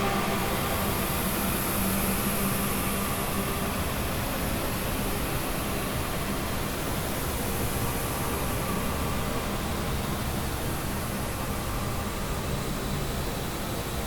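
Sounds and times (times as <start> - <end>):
noise drone music: 0.0 - 2.1.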